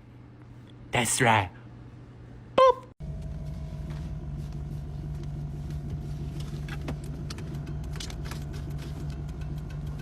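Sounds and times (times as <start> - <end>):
low mechanical hum: 0.0 - 10.0.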